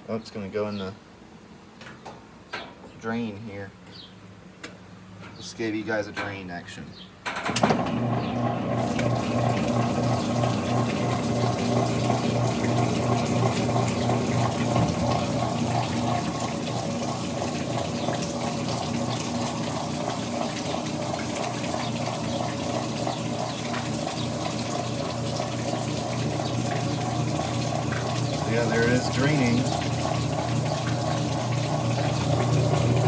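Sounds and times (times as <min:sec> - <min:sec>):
washing machine motor hum: 0:07.4 - 0:33.0
water churning and gurgling: 0:07.8 - 0:33.0.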